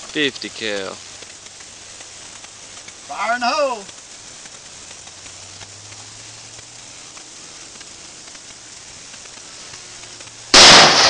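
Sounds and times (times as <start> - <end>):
faint steady hiss: 0.0 - 11.0
loud rifle shot with echo: 10.5 - 11.0.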